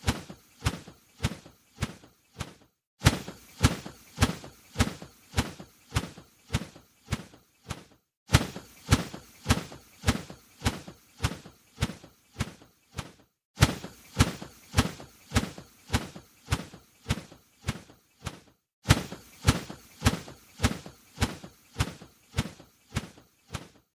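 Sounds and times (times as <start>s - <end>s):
bird wings flapping: 0.0s - 23.9s.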